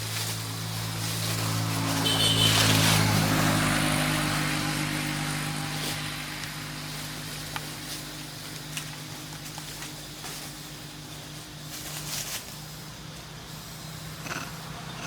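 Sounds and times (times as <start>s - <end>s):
vehicle engine passing by: 0.0s - 15.0s.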